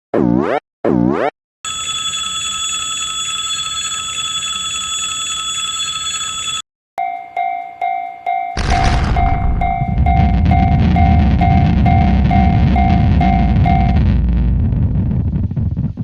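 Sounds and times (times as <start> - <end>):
railroad crossing bell ringing: 1.7 - 14.0
train whine over low rumble: 8.6 - 16.0.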